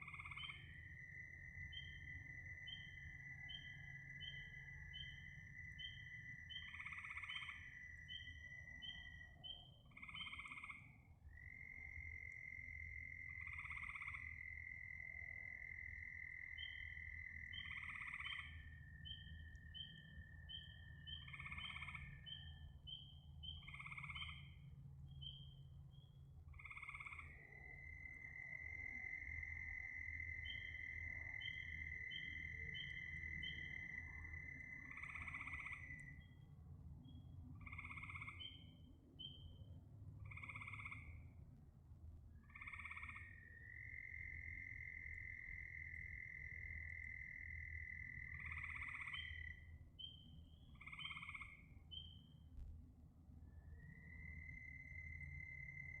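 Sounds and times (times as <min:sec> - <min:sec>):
frog croaking: 0:00.0 - 0:09.2, 0:09.9 - 0:22.6, 0:23.4 - 0:24.7, 0:26.5 - 0:36.4, 0:37.6 - 0:38.8, 0:40.2 - 0:41.4, 0:42.4 - 0:52.2, 0:53.9 - 0:56.0
frog trill: 0:26.6 - 0:29.2, 0:30.4 - 0:36.0, 0:37.6 - 0:38.6, 0:40.3 - 0:41.2, 0:42.5 - 0:49.6, 0:50.8 - 0:52.1.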